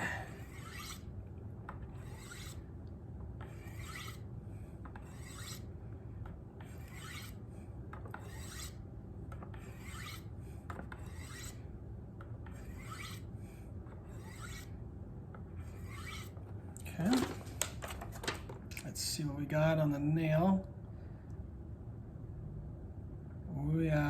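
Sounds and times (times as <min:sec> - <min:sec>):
knife scraping ceramic rods: 0:00.0 - 0:01.1, 0:01.7 - 0:02.6, 0:03.4 - 0:05.7, 0:06.6 - 0:07.4, 0:08.0 - 0:08.8, 0:09.4 - 0:11.6, 0:12.4 - 0:13.3, 0:14.0 - 0:14.7, 0:15.6 - 0:16.4.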